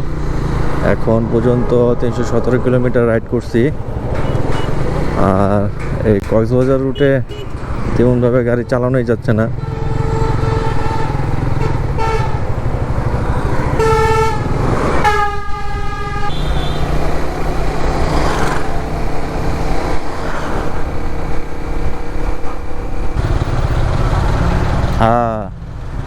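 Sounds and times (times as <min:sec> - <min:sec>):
motorcycle engine rumble: 0:00.0 - 0:26.0
road and wind noise: 0:00.0 - 0:26.0
vehicle horns honking: 0:01.0 - 0:05.1, 0:06.8 - 0:18.0.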